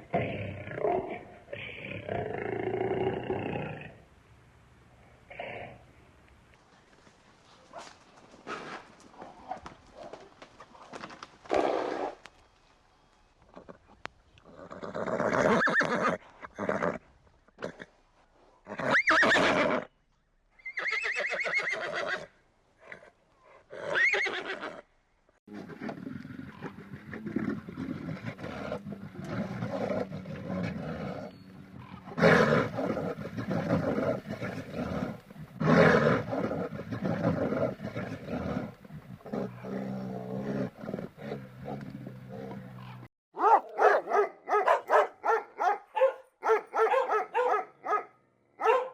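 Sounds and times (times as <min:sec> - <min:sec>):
horse whinnying: 0:14.5 - 0:17.0, 0:18.7 - 0:19.9, 0:20.6 - 0:22.3, 0:23.8 - 0:24.8, 0:25.8 - 0:40.7
animal roaring: 0:25.5 - 0:43.1.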